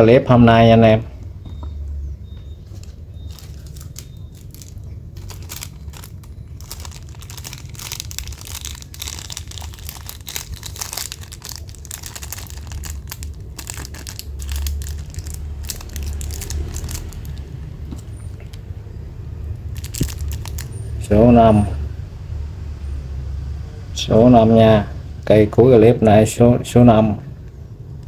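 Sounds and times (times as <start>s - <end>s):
low steady hum: 0.0s - 28.0s
packaging crinkling: 2.6s - 18.6s, 19.6s - 21.0s.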